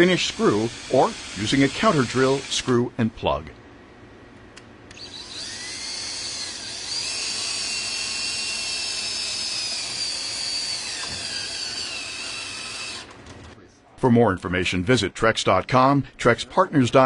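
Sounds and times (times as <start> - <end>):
power drill whining: 0.0 - 2.7, 4.9 - 13.2.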